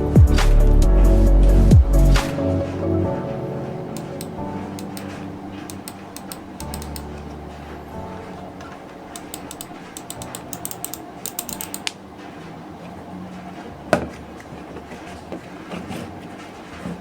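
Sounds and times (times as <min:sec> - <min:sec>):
mechanical keyboard keys clicking: 0:04.0 - 0:07.2, 0:09.2 - 0:12.0.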